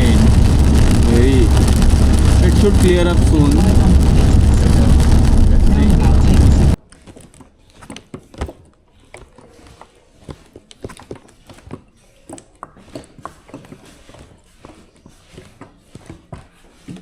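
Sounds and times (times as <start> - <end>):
road and rain noise in car: 0.0 - 6.8.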